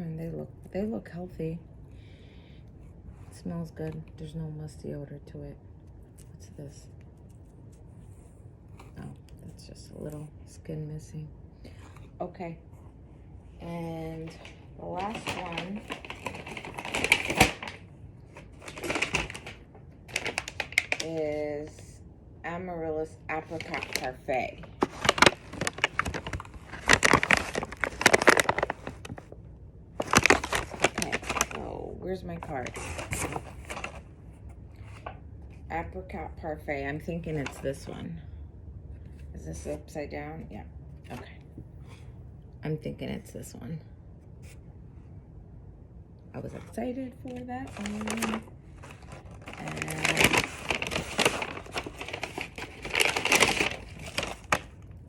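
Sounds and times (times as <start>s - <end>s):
packaging crinkling: 14.1s - 21.8s, 23.4s - 29.4s, 30.0s - 31.7s, 32.4s - 34.1s, 47.3s - 55.0s.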